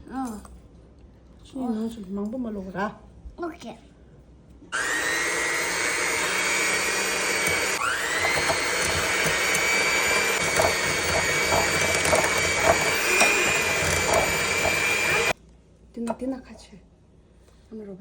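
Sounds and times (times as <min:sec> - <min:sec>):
kitchen mixer motor whine: 0:04.8 - 0:15.4.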